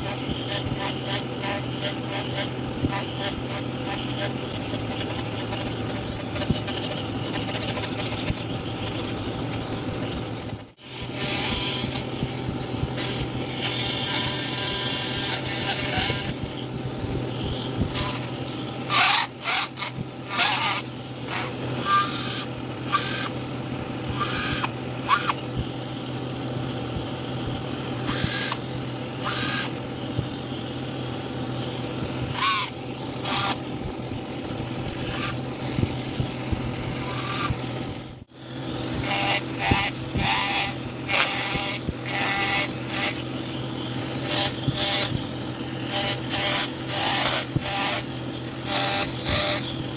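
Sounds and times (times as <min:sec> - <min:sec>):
carving tools scraping wood: 0:00.0 - 0:16.6, 0:17.6 - 0:23.4, 0:24.1 - 0:25.6, 0:28.0 - 0:28.6, 0:29.2 - 0:29.8, 0:39.0 - 0:49.8
steady low hum: 0:00.0 - 0:49.9.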